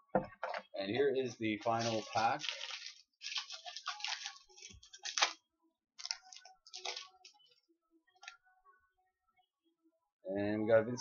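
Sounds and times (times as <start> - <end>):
wrapper tearing and crinkling: 1.7 - 5.4, 6.0 - 7.4.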